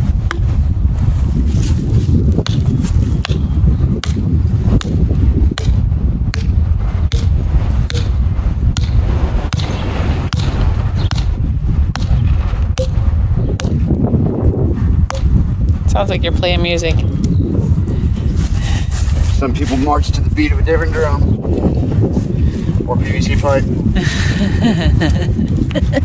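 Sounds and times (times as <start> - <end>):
wind rumble on microphone: 0.0 - 26.0
pvc pipe being struck: 0.3 - 0.5, 5.6 - 8.2, 12.8 - 13.0, 13.6 - 13.8, 15.1 - 15.4.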